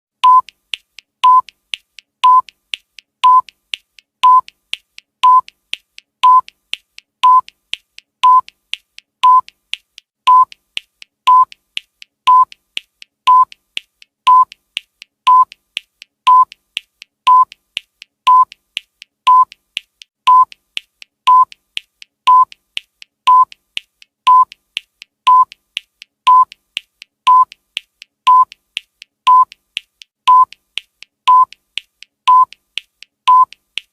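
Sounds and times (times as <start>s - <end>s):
timer beeping: 0.2s - 0.6s, 1.2s - 1.6s, 2.2s - 2.6s, 3.2s - 3.6s, 4.2s - 4.6s, 5.2s - 5.6s, 6.2s - 6.6s, 7.2s - 7.6s, 8.2s - 8.6s, 9.2s - 9.6s, 10.3s - 10.7s, 11.3s - 11.6s, 12.3s - 12.6s, 13.3s - 13.6s, 14.3s - 14.6s, 15.3s - 15.6s, 16.3s - 16.6s, 17.3s - 17.6s, 18.3s - 18.6s, 19.3s - 19.6s, 20.3s - 20.7s, 21.3s - 21.6s, 22.3s - 22.6s, 23.3s - 23.6s, 24.3s - 24.6s, 25.3s - 25.6s, 26.3s - 26.6s, 27.3s - 27.6s, 28.3s - 28.6s, 29.3s - 29.6s, 30.3s - 30.7s, 31.3s - 31.6s, 32.3s - 32.7s, 33.3s - 33.7s
faint ticking: 0.2s - 33.9s.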